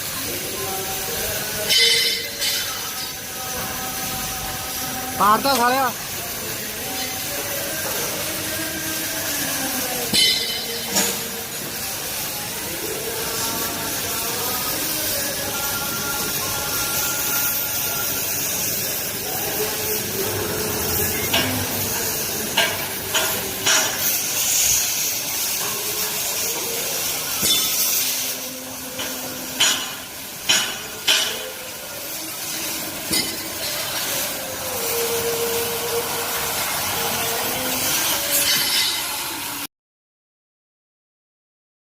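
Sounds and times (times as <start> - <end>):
gas cutting hiss: 0.0 - 39.6
metal clanks from hammer strikes: 1.7 - 3.1, 10.1 - 11.2, 21.1 - 21.7, 22.6 - 24.1, 27.4 - 28.0, 29.0 - 31.5, 33.1 - 33.6, 38.3 - 39.2.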